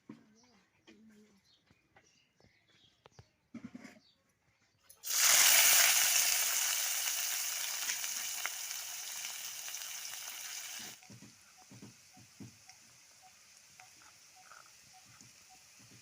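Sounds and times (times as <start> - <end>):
food sizzling in hot oil: 5.0 - 16.0.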